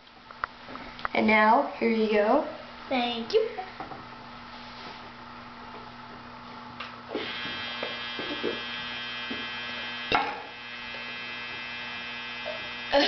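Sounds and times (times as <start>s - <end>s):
electrical hum: 0.0s - 13.0s
high even buzz: 7.1s - 13.0s.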